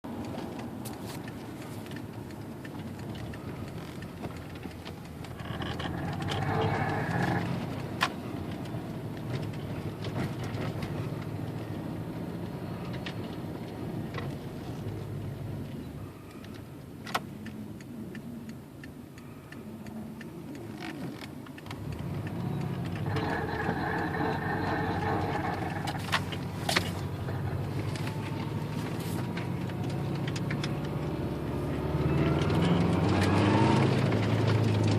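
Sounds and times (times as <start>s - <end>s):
car engine running: 0.2s - 16.3s, 19.2s - 34.9s
rubbing grinding noise: 3.2s - 11.2s, 20.6s - 34.9s
engine revving: 3.3s - 13.3s, 21.7s - 34.9s.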